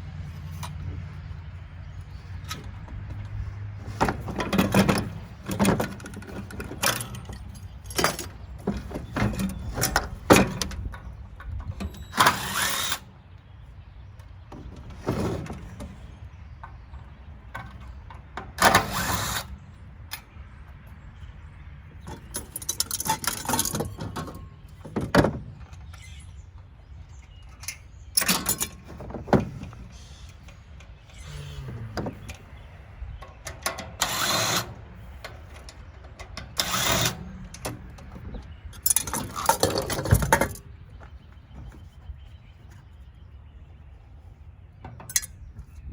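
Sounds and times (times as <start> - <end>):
tool rattling noise: 0.2 - 13.2, 14.5 - 20.3, 22.0 - 26.2, 27.1 - 31.1, 33.2 - 43.0
metal parts knocking and clanking: 2.2 - 13.1, 14.2 - 20.4, 21.9 - 26.4, 27.0 - 31.2, 33.2 - 42.8, 44.8 - 45.9.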